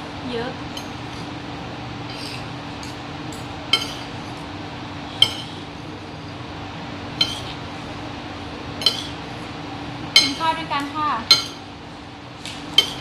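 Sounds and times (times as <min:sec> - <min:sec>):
low background hum: 0:00.0 - 0:13.0
cutlery clinking against a dish: 0:02.1 - 0:04.1, 0:05.2 - 0:05.6, 0:07.2 - 0:07.6, 0:08.8 - 0:09.2, 0:10.2 - 0:10.4, 0:11.3 - 0:11.7, 0:12.7 - 0:13.0.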